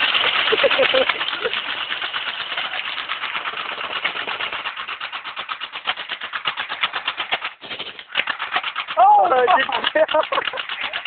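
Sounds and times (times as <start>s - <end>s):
airsoft gun rapid fire: 0.0s - 11.0s.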